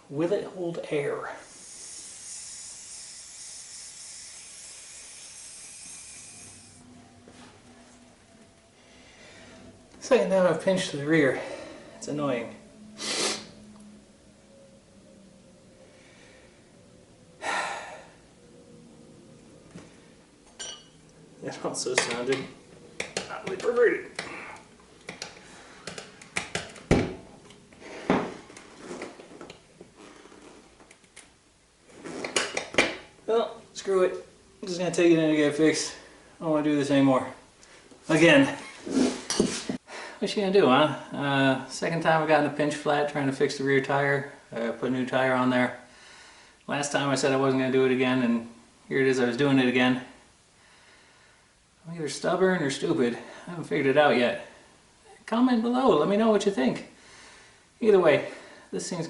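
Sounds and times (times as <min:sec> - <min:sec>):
air hissing from tire: 0:01.3 - 0:06.9, 0:12.8 - 0:13.7.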